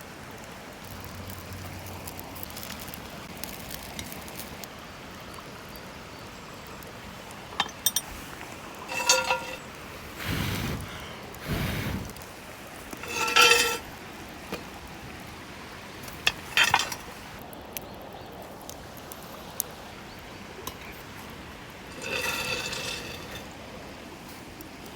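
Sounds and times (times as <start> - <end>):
stream rushing: 6.9 - 17.4
metal cookware clinking: 7.6 - 8.2, 8.8 - 9.7, 13.0 - 13.9, 16.1 - 17.4, 21.9 - 23.6
rustling: 7.8 - 12.2, 12.8 - 13.9, 16.0 - 17.4, 21.8 - 23.6.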